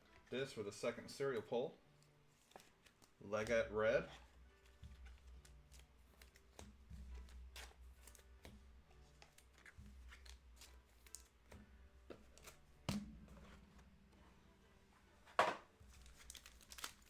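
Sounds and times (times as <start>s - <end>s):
trading cards clicking and sliding: 1.3s - 13.6s.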